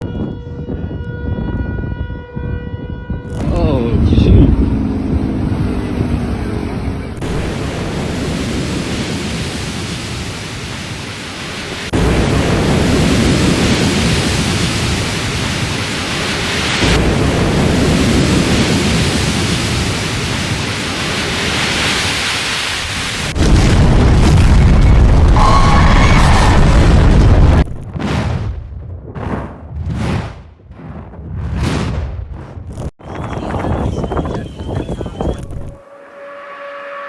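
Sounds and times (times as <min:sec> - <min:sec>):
siren winding down: 0:00.0 - 0:07.6, 0:24.8 - 0:26.8, 0:33.1 - 0:37.0
loud storm wind: 0:00.0 - 0:36.8.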